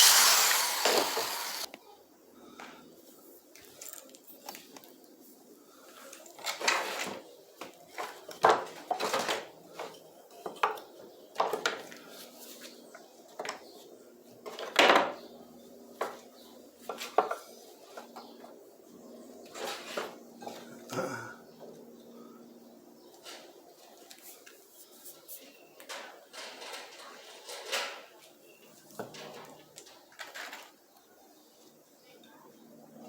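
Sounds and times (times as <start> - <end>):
wooden parts and tools clattering: 7.9 - 11.9.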